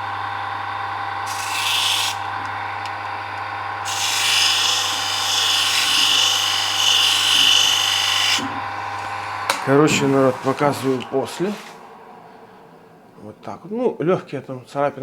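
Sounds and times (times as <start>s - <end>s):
electric abrasive tool humming: 0.0s - 12.0s
abrasive grinding on steel blade: 1.2s - 2.4s, 3.8s - 9.3s.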